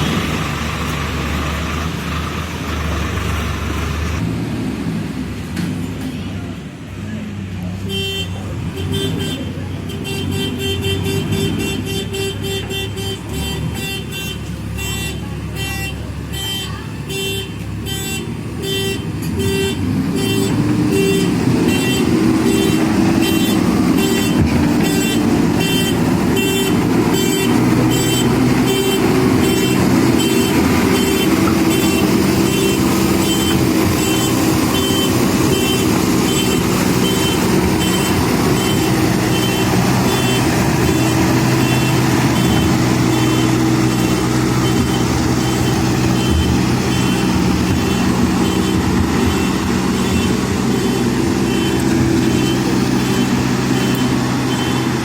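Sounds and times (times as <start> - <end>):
diesel engine under load: 0.0 - 55.0
reversing alarm beeping: 18.8 - 55.0.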